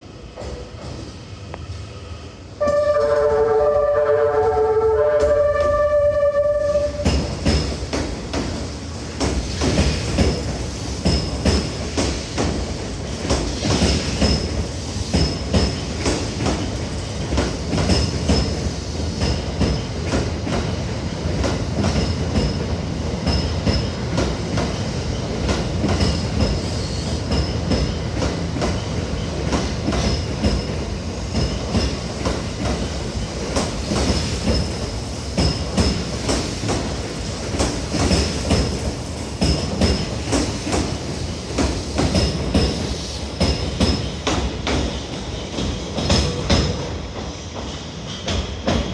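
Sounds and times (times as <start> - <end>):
train rumble: 0.0 - 48.9
train wheels clacking over rail joints: 6.9 - 48.9.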